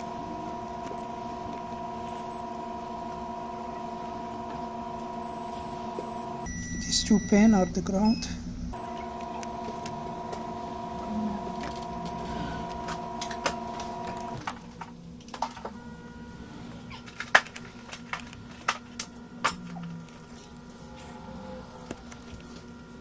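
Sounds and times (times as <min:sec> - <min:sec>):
electrical hum: 0:00.0 - 0:23.0.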